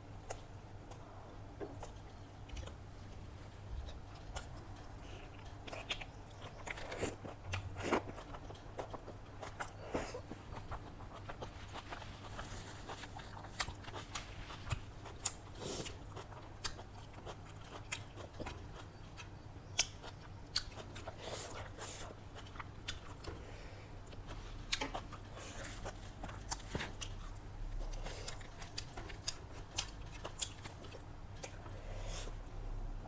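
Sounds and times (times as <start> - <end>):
faint low hum: 0.0 - 33.0
chewing and wet mouth clicks: 1.8 - 2.8, 3.8 - 23.3, 25.8 - 31.7.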